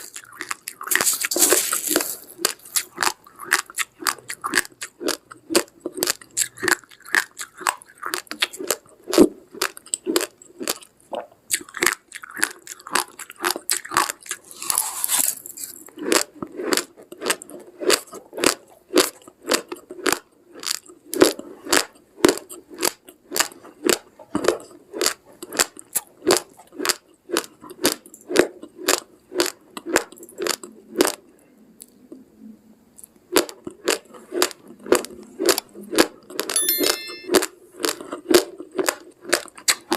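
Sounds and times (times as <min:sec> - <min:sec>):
person chewing dry rice: 0:00.0 - 0:32.0, 0:33.0 - 0:36.6, 0:37.6 - 0:39.9.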